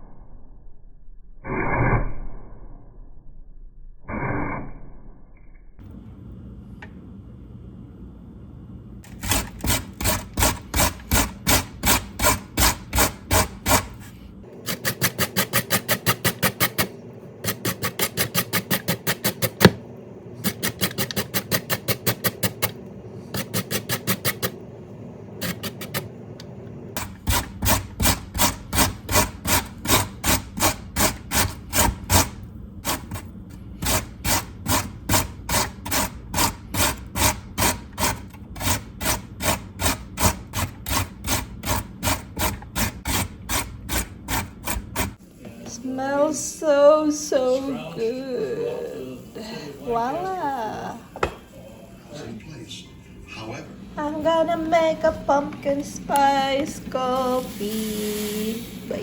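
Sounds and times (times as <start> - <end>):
potatoes grated on metal grater: 9.0 - 19.8, 20.4 - 24.6, 25.4 - 26.1, 27.0 - 45.2, 55.8 - 59.0.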